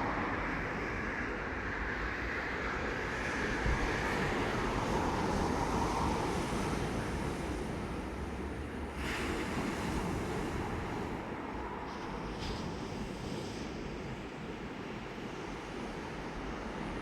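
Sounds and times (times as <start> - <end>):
sea waves washing on shore: 3.8 - 17.0.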